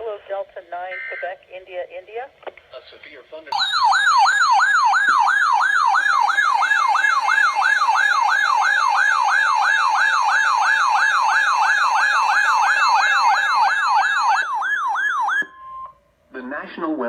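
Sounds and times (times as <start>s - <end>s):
warbling electronic alarm siren: 3.6s - 16.0s.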